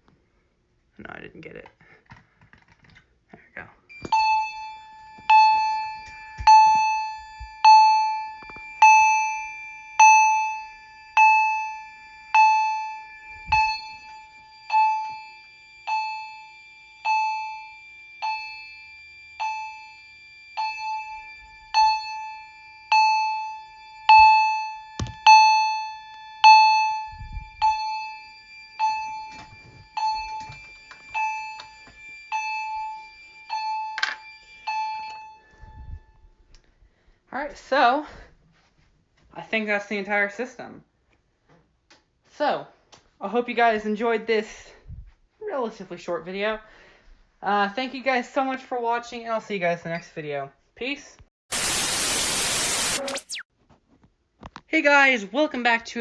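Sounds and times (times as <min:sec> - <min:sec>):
alarm chime ding: 0:03.9 - 0:36.2.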